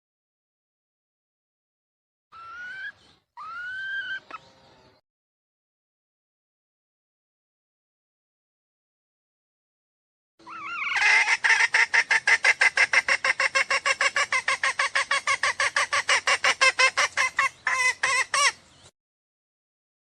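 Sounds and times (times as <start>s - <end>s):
harsh clucking bird call: 2.3s - 4.5s, 10.4s - 18.6s.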